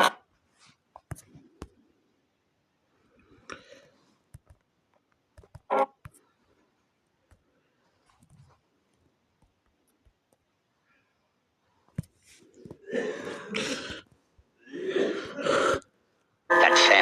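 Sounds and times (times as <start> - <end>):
faint clicks and taps: 0.9 - 1.9, 3.4 - 6.3, 7.0 - 10.6, 11.8 - 12.8.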